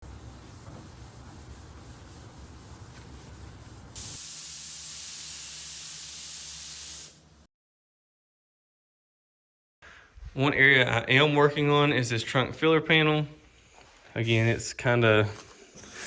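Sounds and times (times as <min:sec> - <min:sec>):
paint spray gun hissing: 0:04.0 - 0:07.4.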